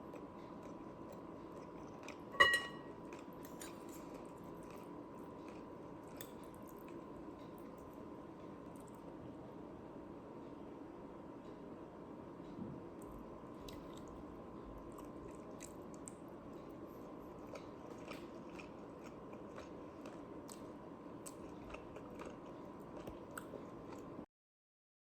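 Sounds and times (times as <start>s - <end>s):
person chewing crunchy food: 0.0s - 8.0s, 14.8s - 24.2s
steady low hum: 0.0s - 24.3s.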